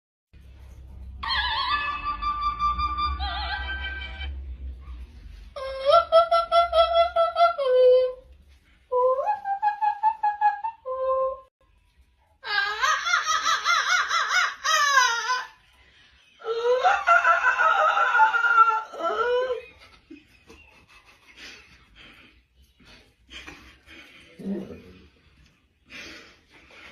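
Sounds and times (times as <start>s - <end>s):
high-pitched laughter: 1.2s - 4.4s, 12.4s - 15.7s, 16.4s - 22.0s.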